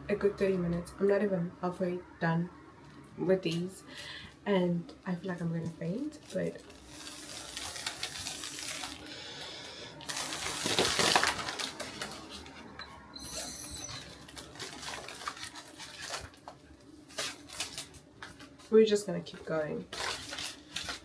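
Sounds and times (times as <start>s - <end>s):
balloon squeak: 13.2s - 14.3s.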